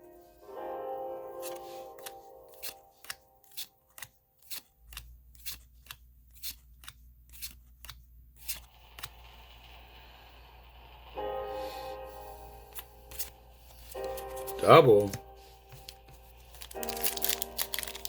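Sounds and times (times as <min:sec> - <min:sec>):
cards sliding with a swish: 0:01.4 - 0:09.2, 0:11.6 - 0:18.0.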